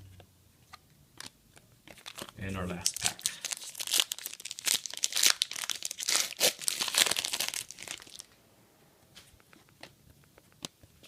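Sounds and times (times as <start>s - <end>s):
wrapper crinkling torn open: 1.9s - 8.3s.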